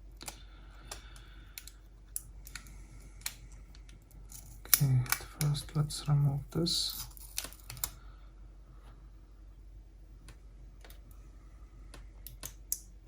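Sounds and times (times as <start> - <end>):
faint clicks and light taps: 0.1 - 5.5, 6.9 - 8.0, 10.2 - 13.0.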